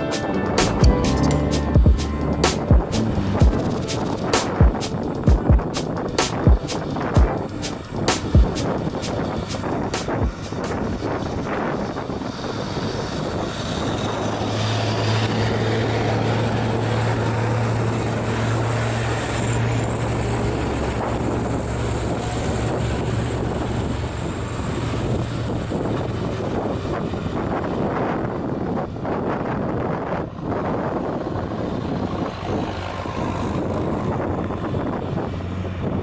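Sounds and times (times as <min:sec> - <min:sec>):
diesel truck engine pulling hard: 0:08.8 - 0:36.0.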